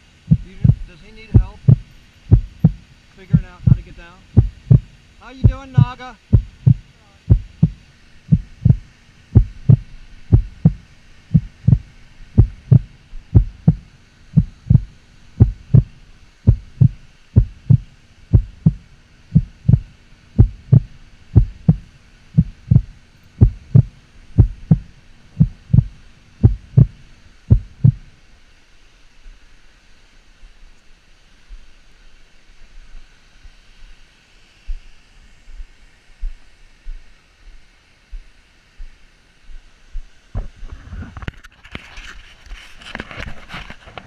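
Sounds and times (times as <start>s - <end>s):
footstep thumps on microphone: 0.3s - 7.8s, 8.4s - 10.8s, 11.4s - 15.9s, 16.5s - 18.8s, 19.4s - 28.0s, 40.4s - 41.4s.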